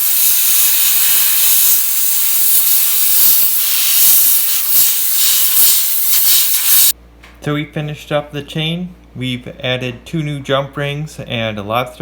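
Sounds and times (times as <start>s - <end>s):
steam cleaner hissing: 0.0s - 7.0s.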